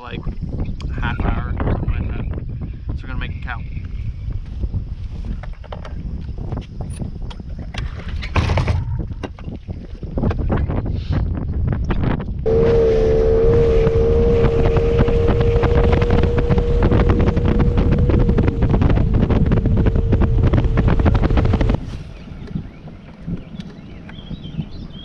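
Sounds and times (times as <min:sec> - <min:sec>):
wind on microphone: 0:00.0 - 0:25.0
outboard motor running: 0:12.4 - 0:24.3.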